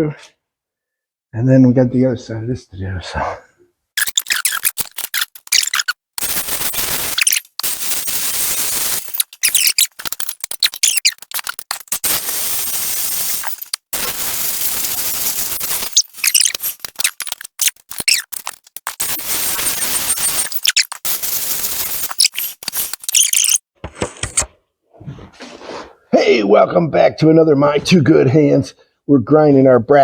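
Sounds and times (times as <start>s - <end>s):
welding arc crackling: 4.0s - 23.7s.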